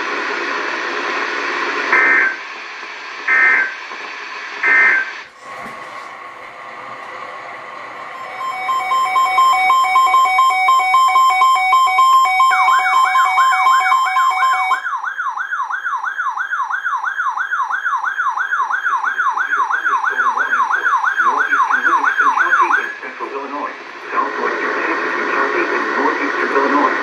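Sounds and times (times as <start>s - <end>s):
fast yelp siren: 8.2s - 22.9s.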